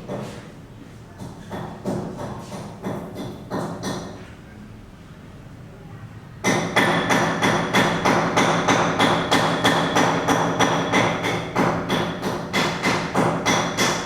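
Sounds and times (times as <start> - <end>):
rapid even knocking: 6.5 - 14.0.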